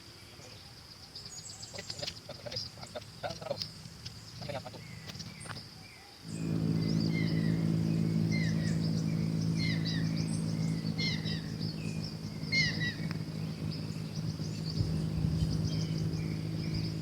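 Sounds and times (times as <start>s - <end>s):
high insect drone: 0.9s - 17.0s
low steady hum: 6.2s - 17.0s
birds chirping: 6.3s - 17.0s.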